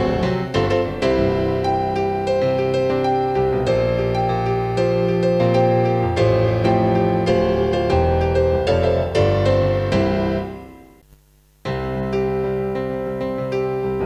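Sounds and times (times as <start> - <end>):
background piano music: 0.0 - 11.0, 11.7 - 14.0.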